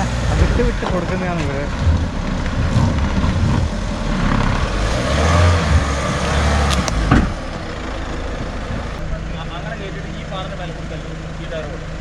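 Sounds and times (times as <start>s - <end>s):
vehicle engine low rumble: 0.0s - 12.0s
sharp knocks: 6.8s - 7.5s.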